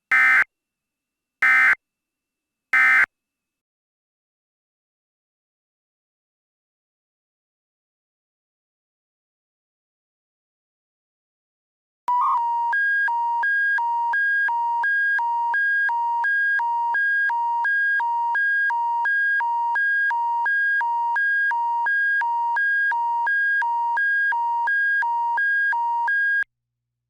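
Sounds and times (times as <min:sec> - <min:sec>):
emergency alert two-tone signal: 0:00.0 - 0:00.4, 0:01.4 - 0:01.8, 0:02.8 - 0:03.1.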